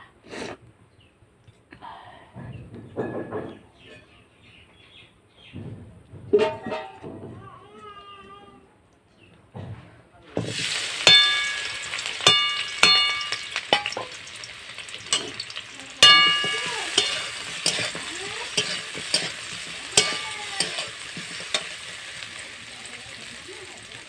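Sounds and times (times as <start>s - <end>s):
metal utensil clanging against pan: 6.4s - 7.0s, 10.4s - 22.5s
food sizzling in hot oil: 10.4s - 24.0s.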